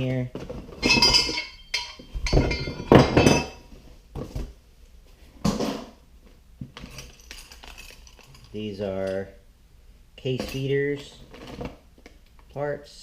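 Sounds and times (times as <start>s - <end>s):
metal parts clinking: 0.8s - 3.6s, 6.8s - 9.2s.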